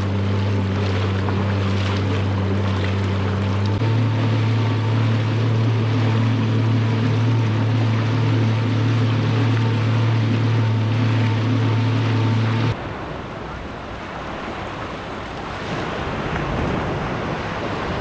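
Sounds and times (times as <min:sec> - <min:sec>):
jet ski engine running: 0:00.0 - 0:18.0.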